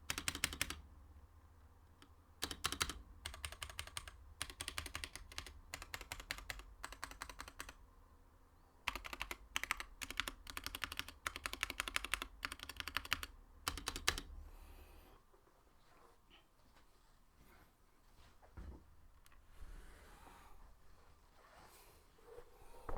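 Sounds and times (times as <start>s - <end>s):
fast typing on mechanical keyboard: 0.0s - 0.8s, 2.4s - 7.8s, 8.9s - 14.3s.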